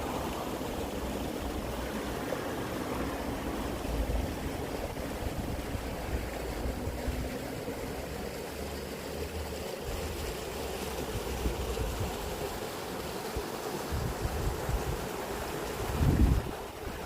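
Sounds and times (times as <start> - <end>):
stream flowing: 0.0 - 17.0
wind rumble on microphone: 13.9 - 15.1, 15.8 - 17.0.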